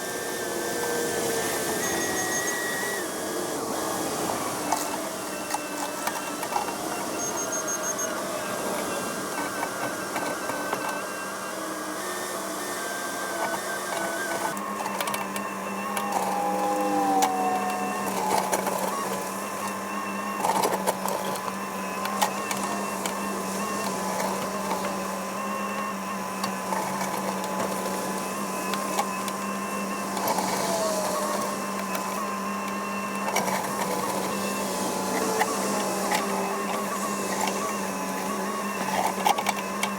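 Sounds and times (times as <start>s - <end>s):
hydraulic whines sliding in pitch: 0.0s - 39.9s
excavator diesel engine: 13.2s - 39.9s.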